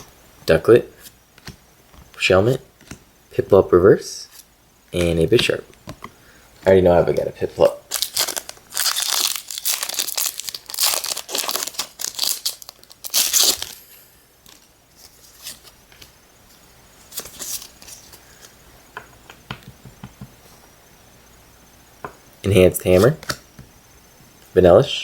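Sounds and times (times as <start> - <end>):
wrapper crinkling and tearing: 7.9 - 13.8
cards being handled: 17.1 - 18.6.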